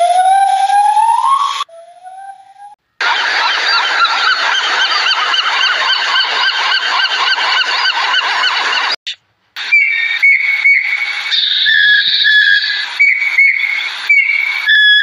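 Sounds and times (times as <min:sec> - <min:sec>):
high whistle-like bird call: 0:00.0 - 0:02.8, 0:09.6 - 0:15.0
geese honking: 0:03.0 - 0:09.0.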